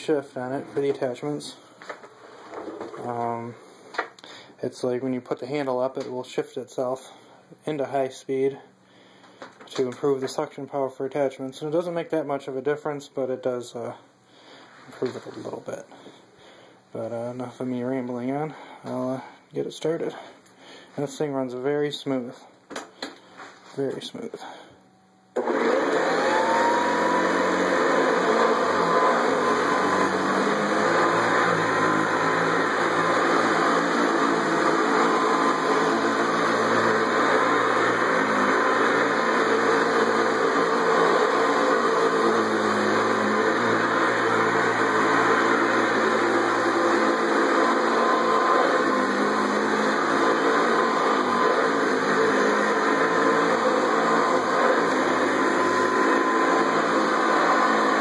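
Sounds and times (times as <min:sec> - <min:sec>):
vacuum cleaner running: 0:00.0 - 0:03.6, 0:25.4 - 0:58.0.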